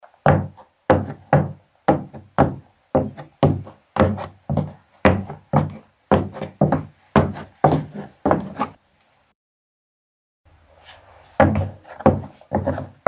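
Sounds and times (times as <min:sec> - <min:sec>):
high heels clicking: 0:00.3 - 0:08.7.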